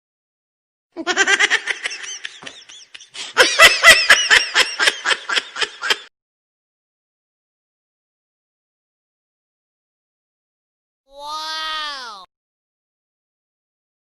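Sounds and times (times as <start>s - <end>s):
person laughing: 1.0s - 6.1s.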